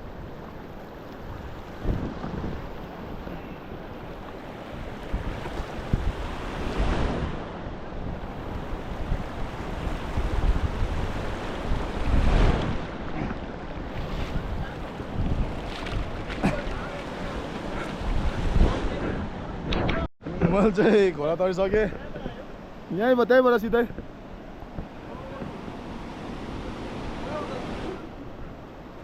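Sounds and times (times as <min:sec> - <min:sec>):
wind buffeting microphone: 0:00.0 - 0:20.0
flowing river water: 0:00.0 - 0:20.4, 0:21.1 - 0:29.0.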